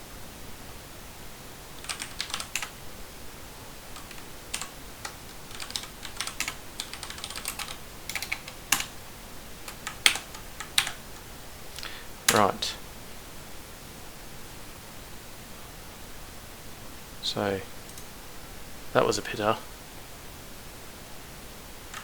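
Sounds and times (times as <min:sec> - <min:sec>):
computer keyboard keys clicking: 0:01.8 - 0:02.8, 0:04.0 - 0:08.9, 0:09.7 - 0:11.0, 0:11.8 - 0:12.7, 0:17.9 - 0:18.1.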